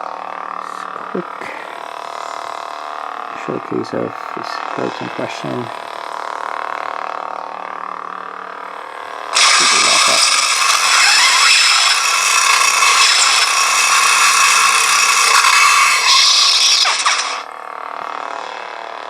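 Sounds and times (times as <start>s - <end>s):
lightsaber hum: 0.0s - 19.0s
harsh noisy lightsaber effect: 3.4s - 5.8s, 9.4s - 17.5s.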